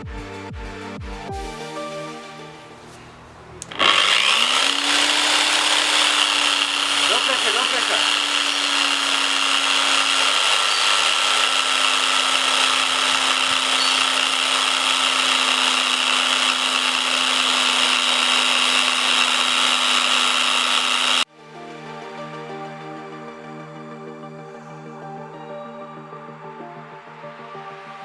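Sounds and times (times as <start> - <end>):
music: 0.0 - 3.4, 21.3 - 28.0
electric power tool whirring: 3.6 - 21.3.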